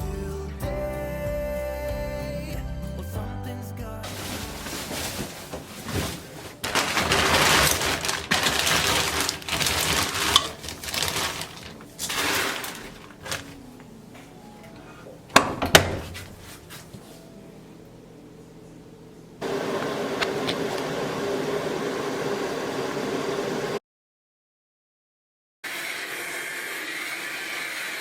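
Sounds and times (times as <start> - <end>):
rushing scraping noise: 4.0 - 13.0.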